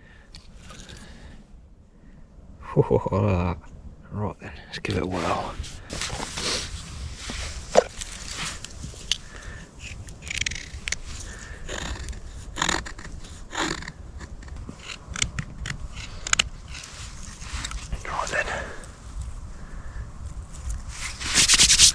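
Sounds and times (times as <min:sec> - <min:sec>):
short scraping strokes: 0:04.9 - 0:08.7, 0:20.9 - 0:21.9.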